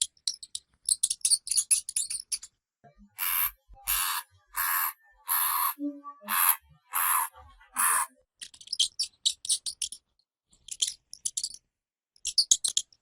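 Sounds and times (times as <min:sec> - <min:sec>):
hamster squeaks: 0:03.2 - 0:09.7.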